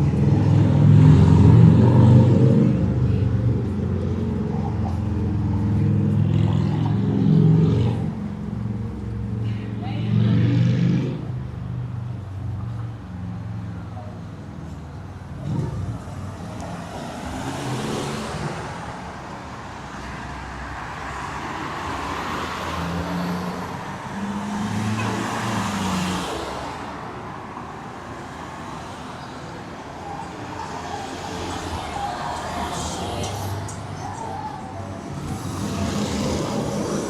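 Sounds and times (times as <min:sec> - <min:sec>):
cars passing: 0:00.0 - 0:37.0
steady urban hum: 0:00.0 - 0:37.0.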